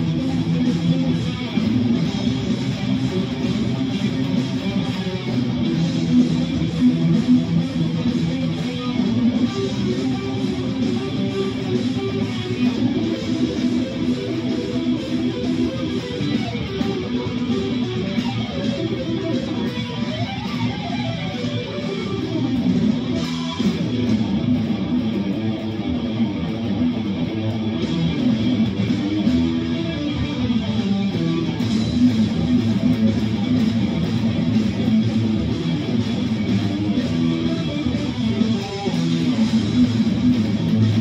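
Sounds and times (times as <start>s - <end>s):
guitar strumming chords: 0.0s - 41.0s.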